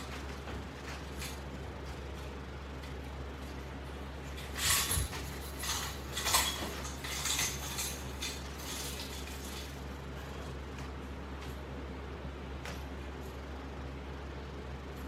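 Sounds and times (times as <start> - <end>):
steady low hum: 0.0 - 15.0
metal fittings clinking and rattling: 4.3 - 9.9.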